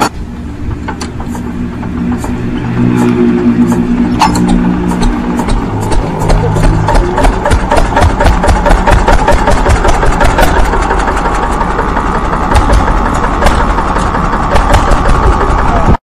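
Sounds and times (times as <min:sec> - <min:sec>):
small diesel engine knocking: 0:04.9 - 0:16.0.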